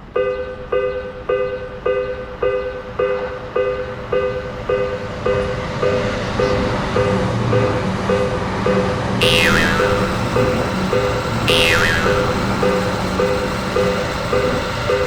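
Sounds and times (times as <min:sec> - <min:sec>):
railroad crossing warning bell: 0:00.0 - 0:15.0.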